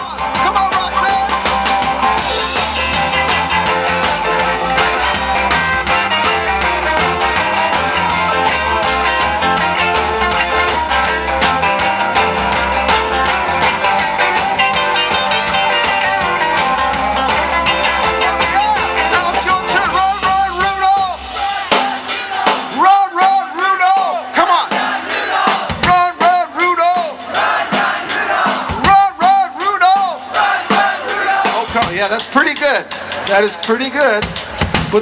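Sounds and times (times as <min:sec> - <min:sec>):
electric guitar lead line: 0:00.0 - 0:21.4
live rock band playing: 0:00.0 - 0:35.0.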